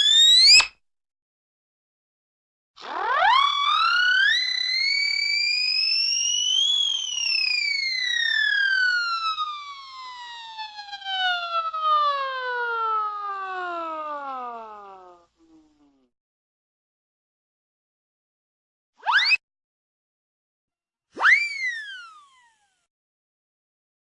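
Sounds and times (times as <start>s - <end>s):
cartoon whistle tone: 0.0s - 0.7s, 19.0s - 19.4s, 21.2s - 22.6s.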